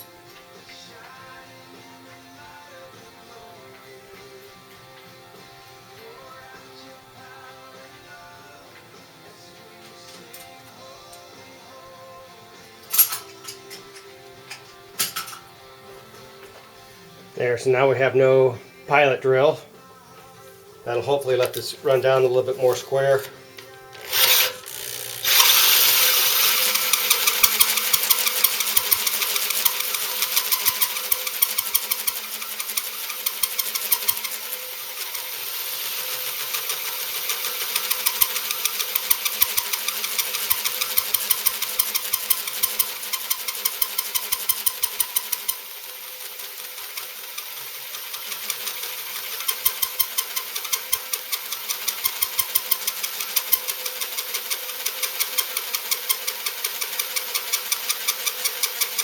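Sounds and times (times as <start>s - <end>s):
hole cutter boring through metal: 23.8s - 59.0s.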